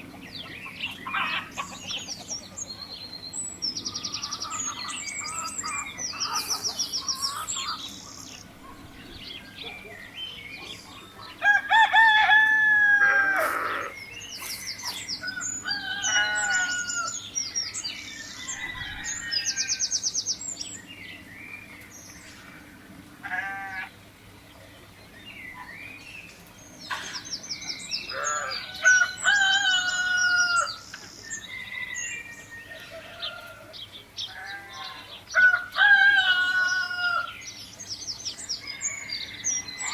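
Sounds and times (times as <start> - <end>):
small birds chirping: 0.0 - 12.4, 13.0 - 35.8
roosters crowing: 0.9 - 2.8, 10.8 - 20.4, 22.2 - 24.1, 27.8 - 37.7, 38.5 - 39.9.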